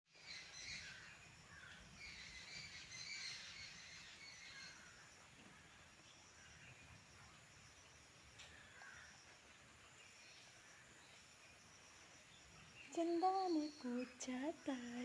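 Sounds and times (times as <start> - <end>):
faint bird chirps: 12.2 - 15.0.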